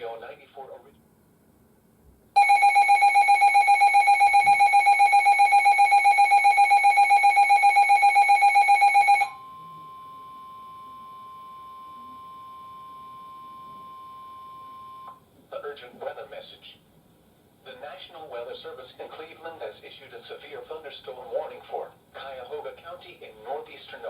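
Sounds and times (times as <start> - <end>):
warbling electronic alert tone: 2.4 - 9.5
steady single alarm tone: 2.4 - 15.2.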